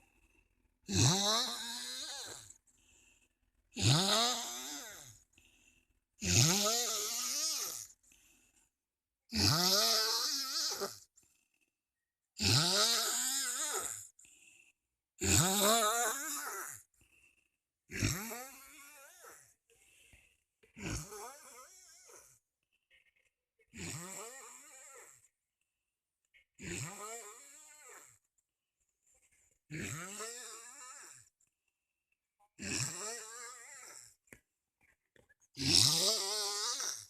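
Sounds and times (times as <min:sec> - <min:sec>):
man snoring heavily: 0:00.0 - 0:08.4, 0:09.3 - 0:11.1, 0:12.4 - 0:14.4, 0:15.2 - 0:16.9, 0:17.9 - 0:20.2, 0:20.8 - 0:22.4, 0:23.7 - 0:25.3, 0:26.6 - 0:28.2, 0:29.7 - 0:31.4, 0:32.6 - 0:34.2, 0:35.6 - 0:37.0.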